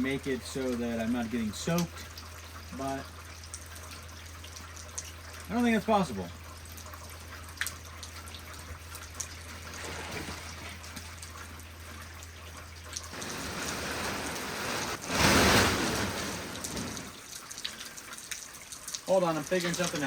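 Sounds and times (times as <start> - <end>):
raindrops ticking close by: 0.0 - 9.8, 10.7 - 14.4, 15.8 - 20.0
steady rain falling: 0.0 - 20.0.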